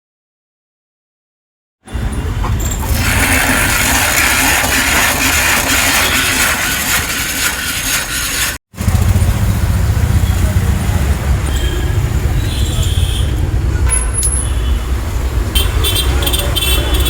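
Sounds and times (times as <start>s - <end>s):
street traffic rumble: 1.9s - 6.7s, 8.6s - 17.0s
hand-cranked mixer whirring: 2.3s - 8.7s.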